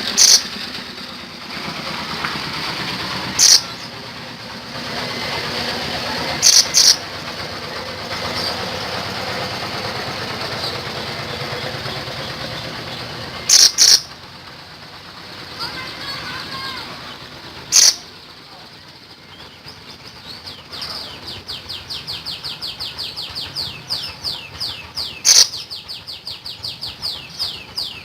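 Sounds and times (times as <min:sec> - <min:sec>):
songbird high-pitched calls: 0:00.0 - 0:00.6, 0:03.4 - 0:04.0, 0:06.3 - 0:07.0, 0:11.8 - 0:14.2, 0:16.6 - 0:18.1, 0:19.2 - 0:28.0
traffic rumble: 0:00.0 - 0:28.0.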